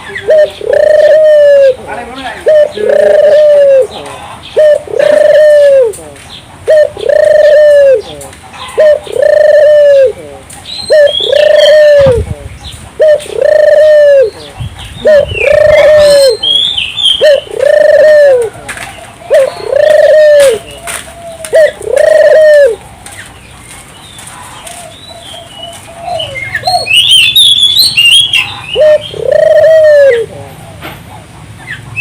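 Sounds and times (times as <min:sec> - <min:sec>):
doves cooing: 0:00.0 - 0:23.8, 0:24.4 - 0:32.0
small birds chirping: 0:10.3 - 0:30.8.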